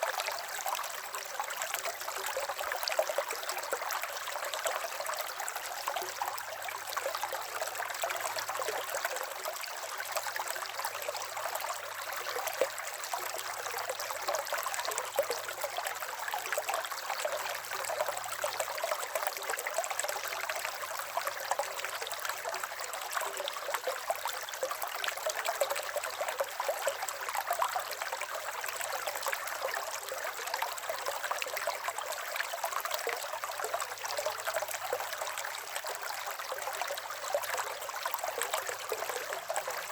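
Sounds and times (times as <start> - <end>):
river water over stones: 0.0 - 39.9.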